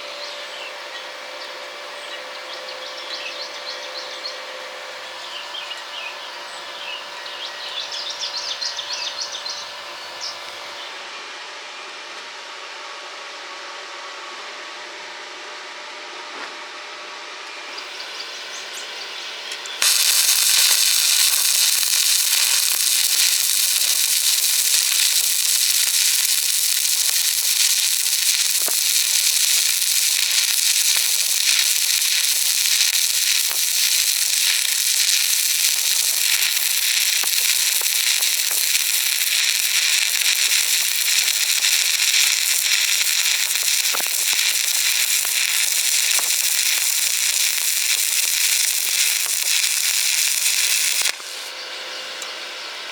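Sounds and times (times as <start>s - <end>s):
welding arc crackling and sizzling: 19.5s - 51.6s.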